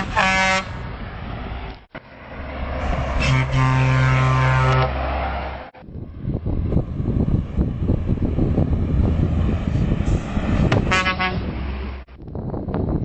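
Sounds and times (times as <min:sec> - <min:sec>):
truck horn blast: 0:00.0 - 0:00.8, 0:02.8 - 0:05.1, 0:10.8 - 0:11.6
truck engine and road noise: 0:00.0 - 0:13.0.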